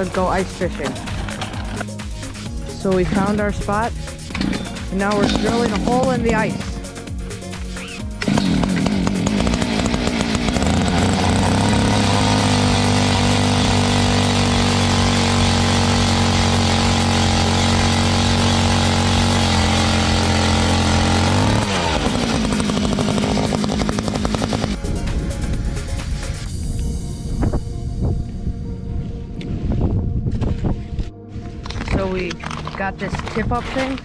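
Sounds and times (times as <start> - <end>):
power ice auger drilling: 0.0 - 6.9, 7.6 - 25.2.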